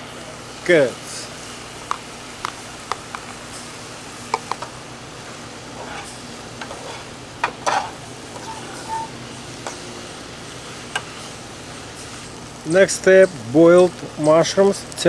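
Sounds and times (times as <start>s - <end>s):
vegetables sizzling in a frying pan: 0.0s - 15.0s
utensil scraping a pan: 5.3s - 9.8s.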